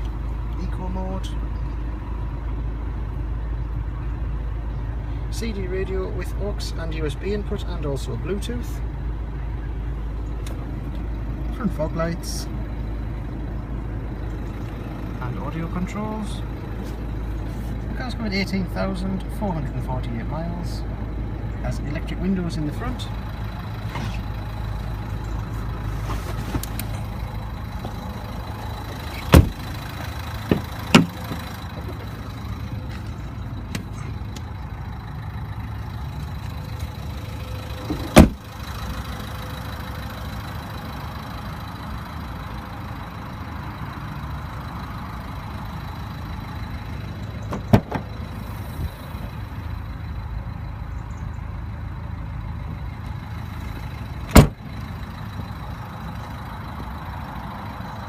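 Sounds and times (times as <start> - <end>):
car engine idling: 0.0 - 58.0
sharp knocks or clunks: 29.3 - 29.6, 30.4 - 32.1, 37.9 - 38.4, 47.5 - 48.1, 54.3 - 54.6.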